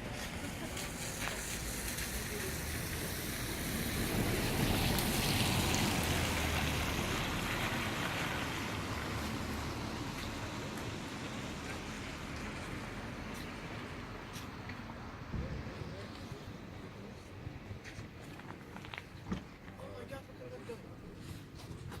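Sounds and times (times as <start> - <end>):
vehicle passing by: 0.0 - 14.1.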